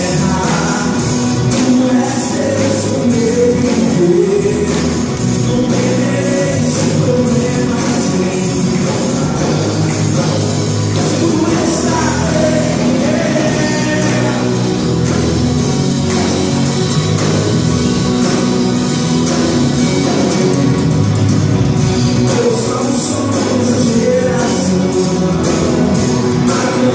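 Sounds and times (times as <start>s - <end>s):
person singing: 0.0s - 15.3s, 22.2s - 26.9s
worship band playing: 0.0s - 26.9s.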